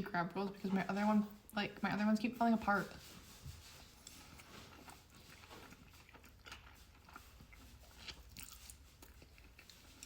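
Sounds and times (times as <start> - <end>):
chewing mouth clicks: 4.3 - 10.0.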